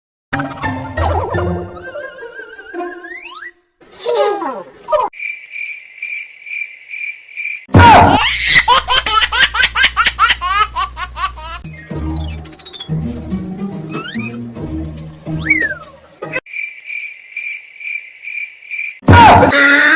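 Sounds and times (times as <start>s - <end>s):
falling pitch glides: 0.4s - 5.1s.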